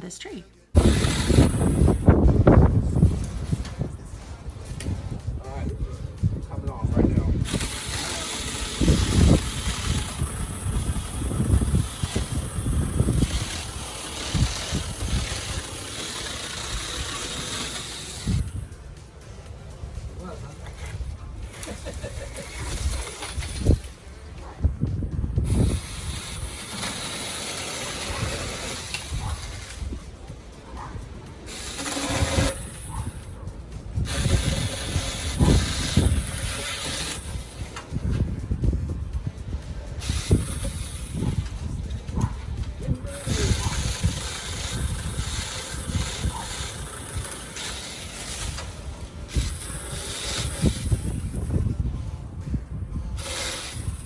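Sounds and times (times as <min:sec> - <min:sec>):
wind buffeting microphone: 0:00.7 - 0:54.0
chainsaw cutting branches: 0:00.8 - 0:03.8, 0:07.4 - 0:24.4, 0:25.4 - 0:38.6, 0:39.6 - 0:51.9, 0:53.1 - 0:54.0.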